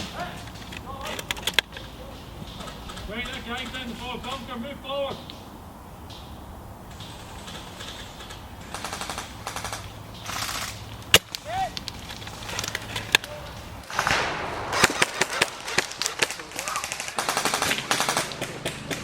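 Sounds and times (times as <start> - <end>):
airsoft guns firing full-auto: 8.7 - 11.4, 13.8 - 19.0
sharp loud crack: 13.8 - 19.0.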